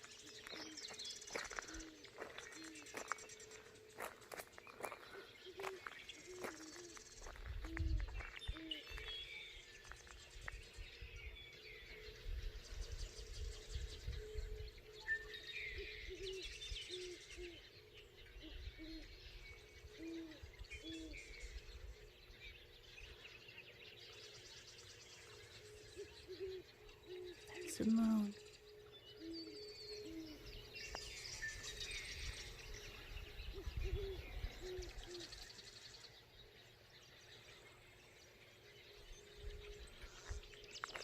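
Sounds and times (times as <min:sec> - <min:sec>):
blackbirds chattering and chirping: 0:00.0 - 0:41.0
owls hooting: 0:26.0 - 0:28.5, 0:29.1 - 0:30.5.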